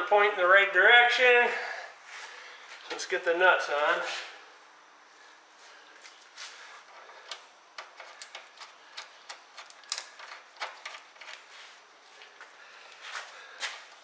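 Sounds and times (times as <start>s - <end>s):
light clicks and taps of nuts: 7.2s - 11.4s.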